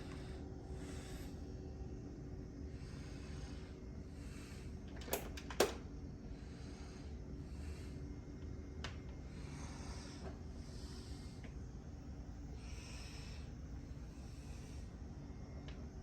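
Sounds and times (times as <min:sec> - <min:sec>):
person breathing: 0:00.0 - 0:01.5, 0:02.7 - 0:04.8, 0:09.2 - 0:11.6, 0:12.4 - 0:15.2.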